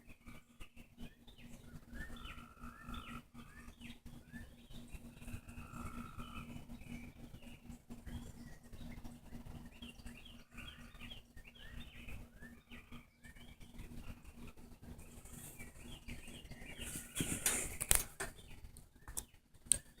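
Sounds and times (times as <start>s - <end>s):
frogs chirping: 2.1s - 3.7s, 5.0s - 7.0s
loud rustle: 16.8s - 18.3s.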